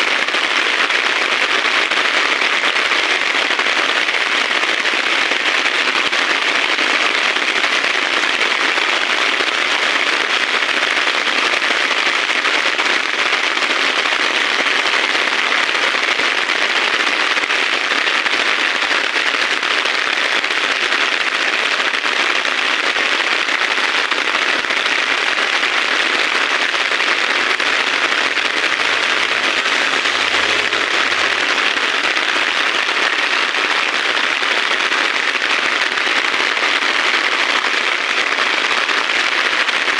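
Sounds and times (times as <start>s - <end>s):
heavy rain falling: 24.7s - 34.8s.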